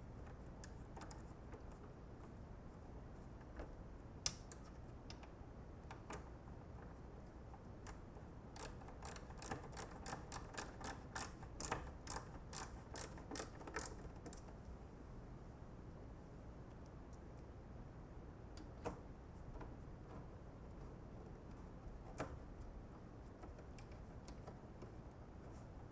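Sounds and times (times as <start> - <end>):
ratcheting hand tool clicks: 8.6 - 14.4.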